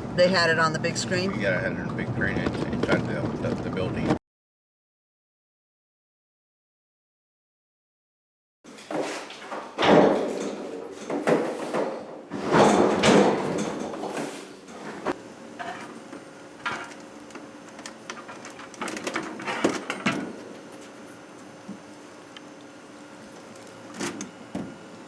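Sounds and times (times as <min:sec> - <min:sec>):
knocks and scraping handling noises: 0:08.7 - 0:16.0.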